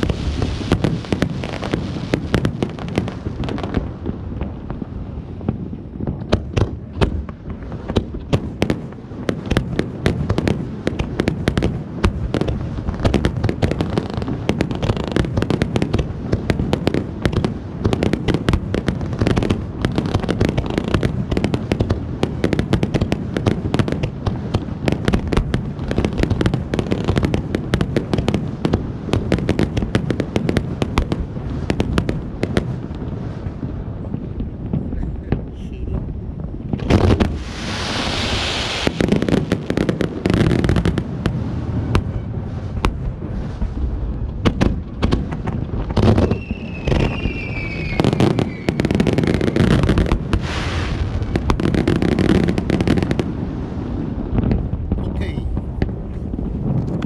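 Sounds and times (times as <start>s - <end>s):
fireworks crackling: 0.0s - 57.0s
loud hissing rush: 37.2s - 39.7s, 50.2s - 51.4s.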